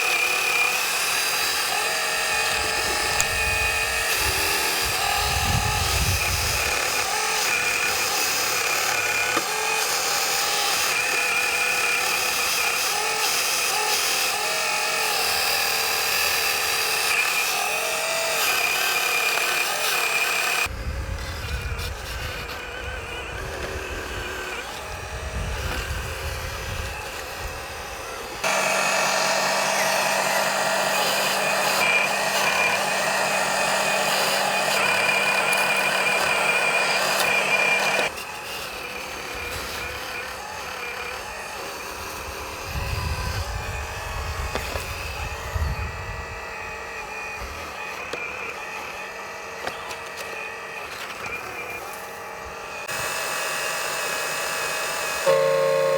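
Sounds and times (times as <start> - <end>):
electric motors and hydraulic pump whining: 0.0 - 55.9
wind rumbling on microphone: 2.4 - 7.0, 20.7 - 28.0, 42.4 - 46.7.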